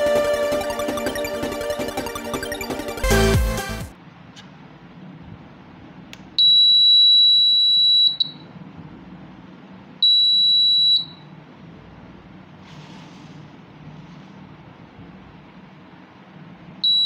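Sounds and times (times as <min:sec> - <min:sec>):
door alarm buzzer beep: 0:06.4 - 0:08.4, 0:10.0 - 0:11.2.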